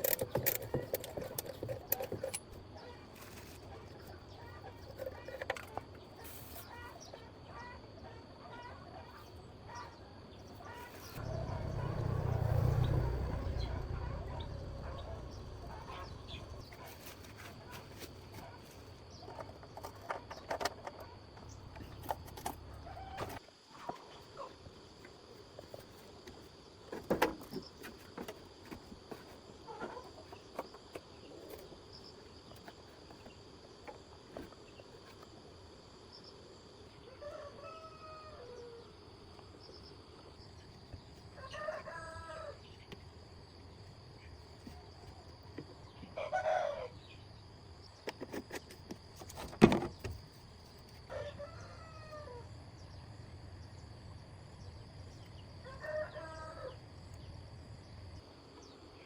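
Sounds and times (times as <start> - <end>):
scattered clicks and knocks: 0.0 - 2.6
rooster crowing: 37.1 - 38.8, 41.4 - 42.6, 46.2 - 47.0, 55.6 - 56.8.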